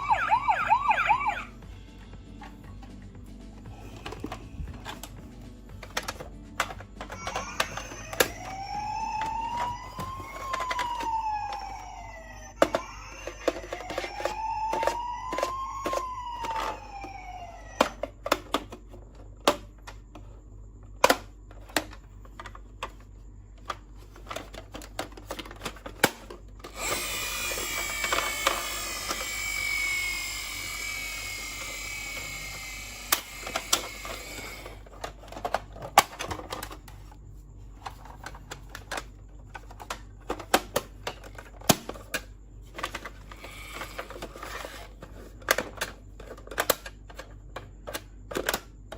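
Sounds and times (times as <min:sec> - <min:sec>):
toy siren: 0:00.0 - 0:01.6, 0:06.7 - 0:18.4, 0:26.7 - 0:34.8
toy motor whirring: 0:05.8 - 0:18.6, 0:24.1 - 0:36.8, 0:42.7 - 0:48.6.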